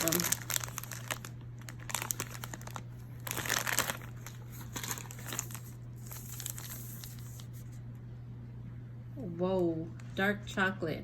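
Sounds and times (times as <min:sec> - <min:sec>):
plastic packaging rustling: 0:00.0 - 0:07.8
faint low hum: 0:00.0 - 0:11.0.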